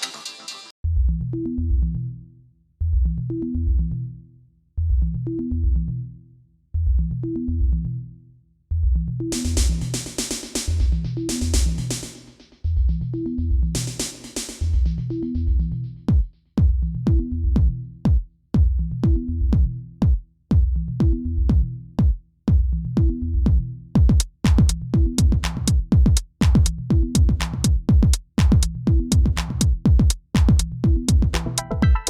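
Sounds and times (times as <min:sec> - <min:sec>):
electronic music with drum-machine beat: 0:09.3 - 0:12.4, 0:13.1 - 0:22.2, 0:23.0 - 0:32.0.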